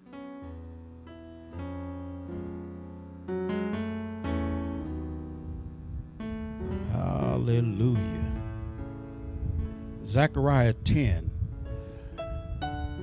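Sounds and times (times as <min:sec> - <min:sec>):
church keyboard chords: 0:00.0 - 0:13.0
deep bass notes: 0:04.3 - 0:13.0.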